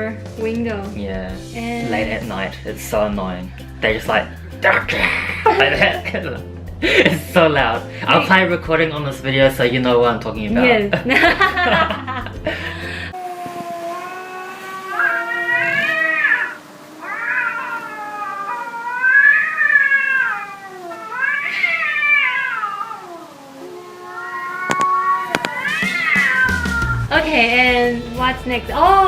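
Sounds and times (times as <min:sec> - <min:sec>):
cats yowling in a fight: 0:13.3 - 0:27.1.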